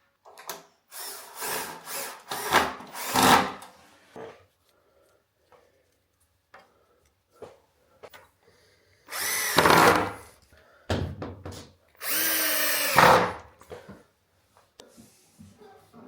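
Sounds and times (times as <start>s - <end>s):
power drill whining: 0.9s - 3.6s, 9.1s - 10.4s, 12.0s - 13.4s.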